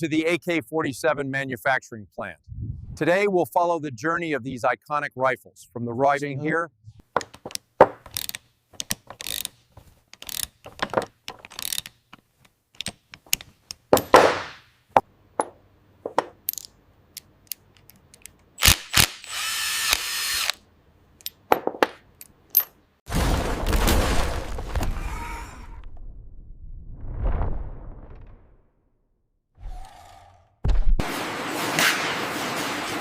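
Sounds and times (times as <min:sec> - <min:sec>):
rumbling rush: 0:02.4 - 0:03.1
sharp metallic mechanical clicks: 0:10.2 - 0:10.6, 0:11.4 - 0:12.0.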